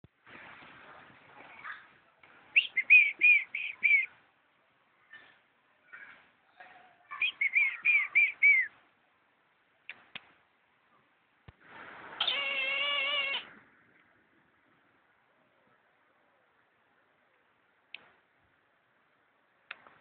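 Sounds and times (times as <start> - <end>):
eagle calling: 2.6 - 4.1, 7.1 - 8.7, 12.2 - 13.5.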